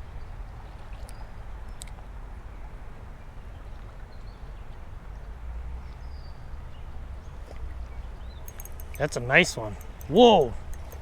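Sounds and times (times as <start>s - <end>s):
creek water running: 8.4s - 11.0s.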